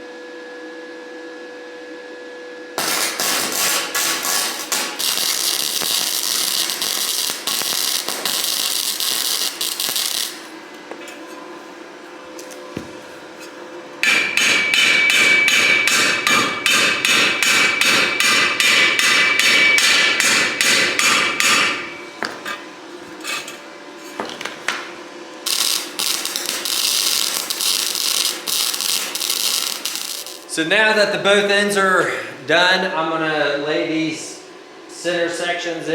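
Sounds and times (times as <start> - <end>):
welding arc crackling and buzzing: 2.8 - 11.0, 14.0 - 31.8.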